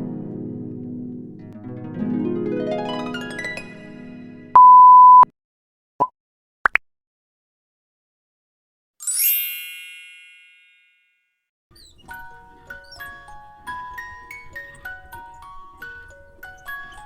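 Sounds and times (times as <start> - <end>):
harp glissando: 1.6 - 4.5
censor bleep tone: 4.6 - 5.3.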